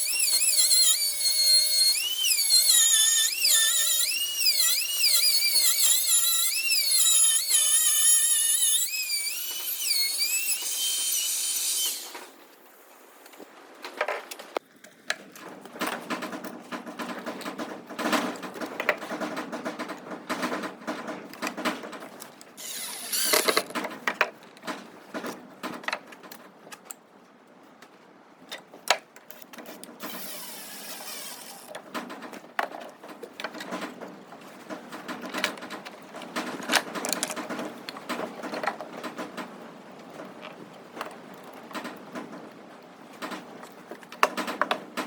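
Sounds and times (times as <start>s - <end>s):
small power tool running: 0.0s - 12.2s, 22.6s - 23.6s, 30.1s - 31.6s
knocks and clatter of wood and tools: 13.8s - 22.6s, 23.3s - 26.9s, 31.7s - 45.0s.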